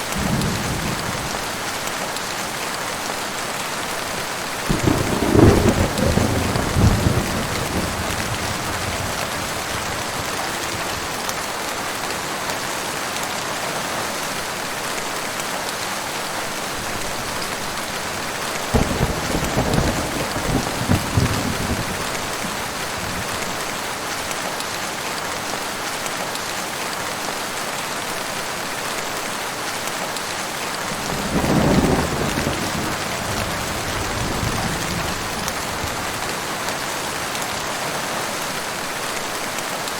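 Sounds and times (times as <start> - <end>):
heavy rain: 0.0 - 39.9
thunder rumbling: 4.7 - 11.2, 18.7 - 23.3, 30.9 - 36.6.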